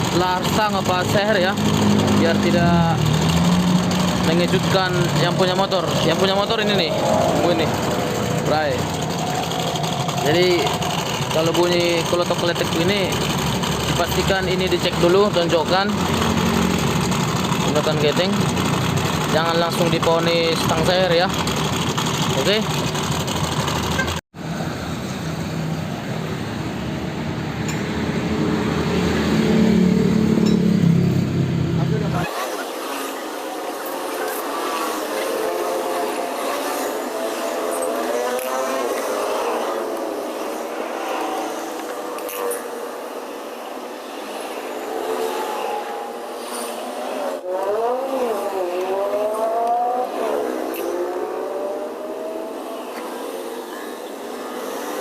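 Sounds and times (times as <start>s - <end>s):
scooter engine revving: 0.0s - 24.2s, 28.2s - 55.0s
scooter engine knocking: 8.2s - 14.0s, 16.0s - 19.4s, 21.3s - 24.2s.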